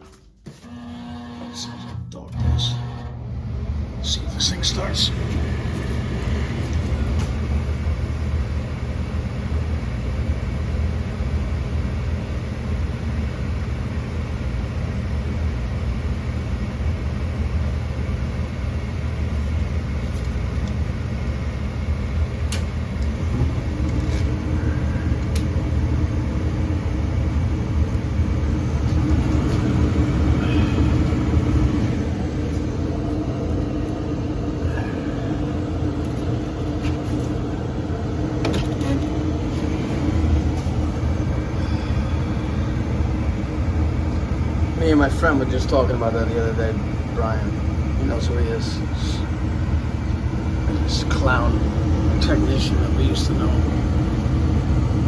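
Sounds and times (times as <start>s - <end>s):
gas furnace humming: 0.0s - 55.0s.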